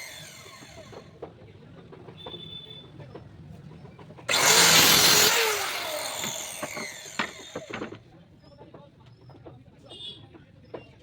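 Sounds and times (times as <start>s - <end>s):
woodworking power tool running: 0.0s - 1.1s, 4.3s - 8.0s.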